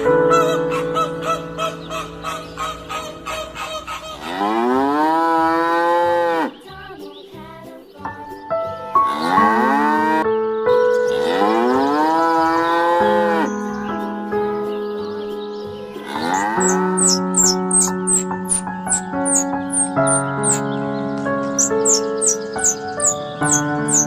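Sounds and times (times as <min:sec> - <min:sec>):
light background music: 0:00.0 - 0:24.0
cattle mooing: 0:04.1 - 0:06.6, 0:09.1 - 0:10.2, 0:11.2 - 0:13.5, 0:16.0 - 0:17.2.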